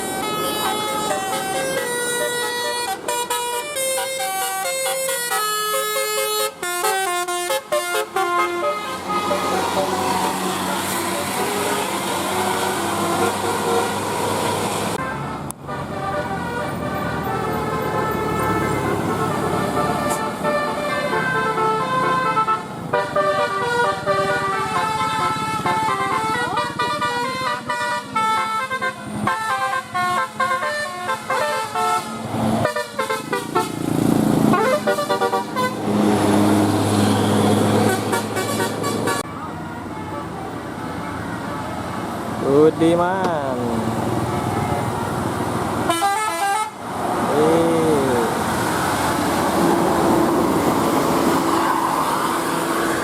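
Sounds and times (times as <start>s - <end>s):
multi-tone air horn melody: 0.0s - 33.8s, 34.5s - 40.2s, 45.8s - 46.8s.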